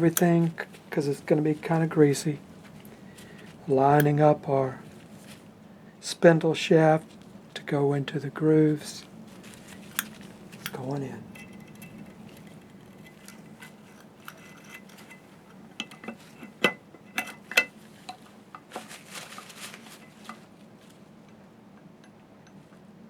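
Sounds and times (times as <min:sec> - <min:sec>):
metal scraping: 0:09.3 - 0:17.7
small metal parts clicking: 0:09.9 - 0:16.2.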